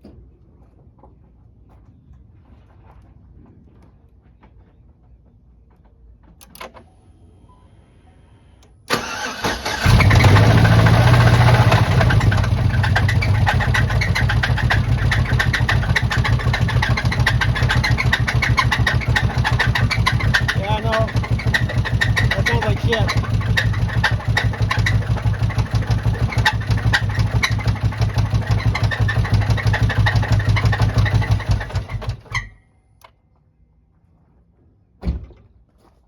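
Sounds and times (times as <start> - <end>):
engine cranking and running: 8.9 - 32.6
screeching and knocking inside engine: 8.9 - 32.6.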